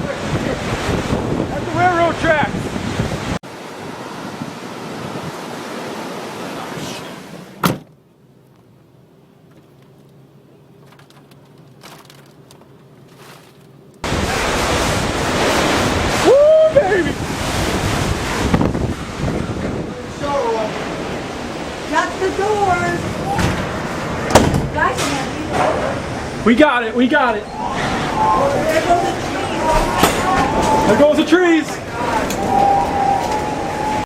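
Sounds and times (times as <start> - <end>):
wind buffeting microphone: 0.0 - 6.0, 14.0 - 26.5
low hum: 27.2 - 34.0.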